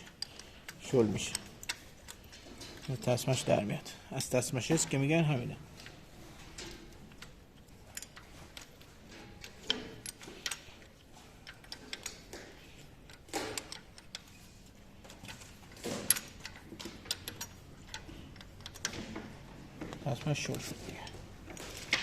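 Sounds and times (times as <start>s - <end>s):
metallic clicks of hand tools: 0.0s - 3.0s, 13.1s - 14.4s.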